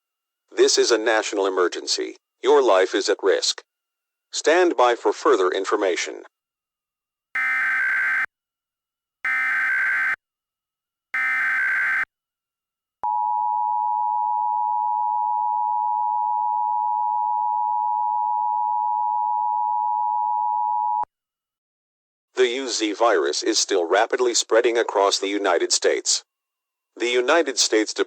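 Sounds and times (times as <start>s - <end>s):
warbling digital data screech: 11.2s - 12.0s.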